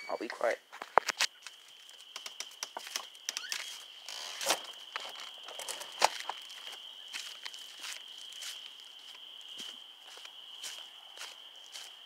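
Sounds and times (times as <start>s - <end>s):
insects trilling: 0.0s - 12.0s
footsteps: 0.7s - 12.0s.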